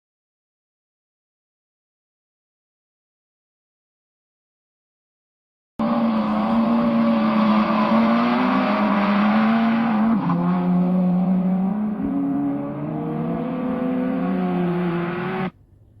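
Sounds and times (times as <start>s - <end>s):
racing car engine: 5.8s - 16.0s.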